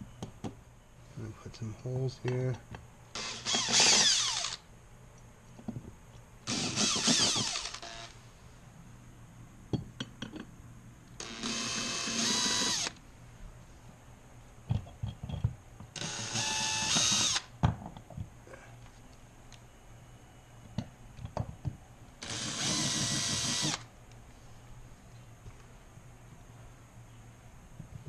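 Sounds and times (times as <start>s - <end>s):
power drill whining: 3.2s - 4.6s, 6.5s - 8.2s, 11.2s - 13.0s, 16.0s - 17.5s, 22.2s - 23.9s.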